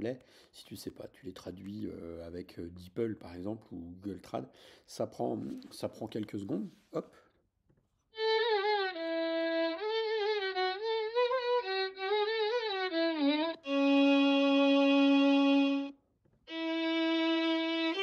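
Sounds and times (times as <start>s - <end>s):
solo violin melody: 8.1s - 18.0s.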